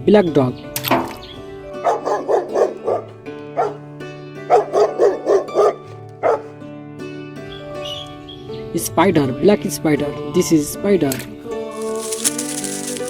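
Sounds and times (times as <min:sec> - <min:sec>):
background music: 0:00.0 - 0:08.0
dog barking: 0:01.8 - 0:03.9, 0:04.5 - 0:06.6.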